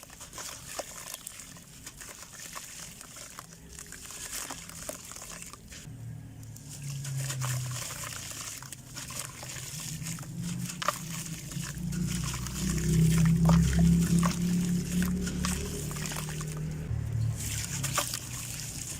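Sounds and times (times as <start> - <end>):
small crackles: 0.0 - 18.9
low drone: 9.6 - 17.8.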